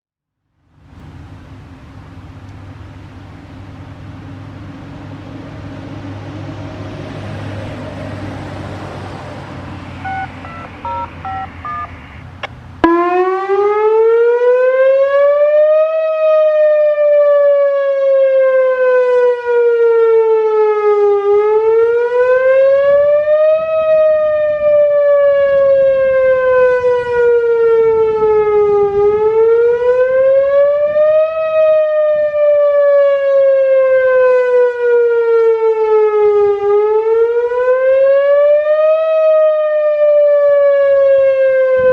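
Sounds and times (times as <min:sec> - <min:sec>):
outdoor warning siren wailing: 0:06.0 - 0:41.9
beeping activation tones: 0:10.0 - 0:12.3.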